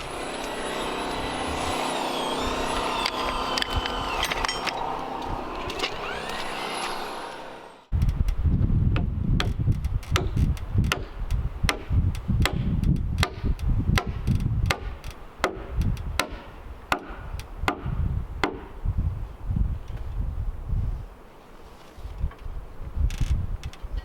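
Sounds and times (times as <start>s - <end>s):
hand tool striking wood: 9.0s - 18.7s.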